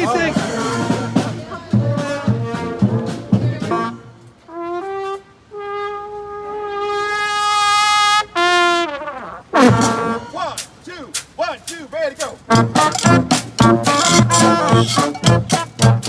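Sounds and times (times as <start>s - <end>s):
solo brass horn notes: 0.0s - 10.5s, 12.5s - 16.0s
brass band playing: 0.0s - 16.0s
low beat: 9.7s - 16.0s.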